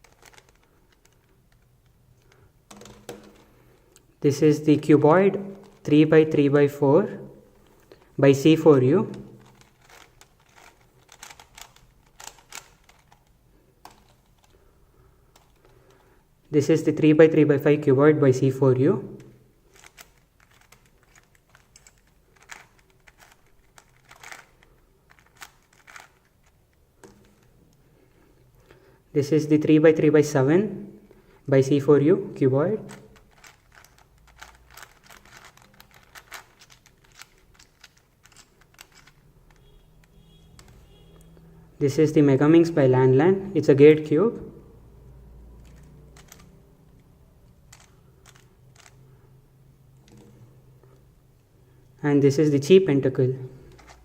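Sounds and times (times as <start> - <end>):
plastic puzzle clicks: 0.0 - 4.1, 9.1 - 14.6, 19.2 - 27.8, 32.8 - 40.8, 45.6 - 49.0, 53.7 - 54.0.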